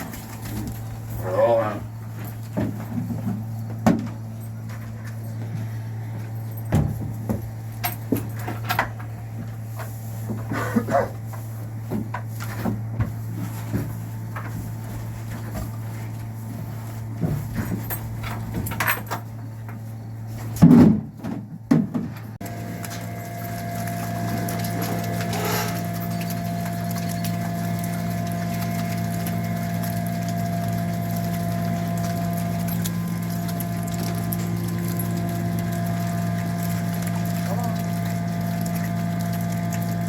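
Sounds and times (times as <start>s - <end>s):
steady machine hum: 22.2s - 40.0s.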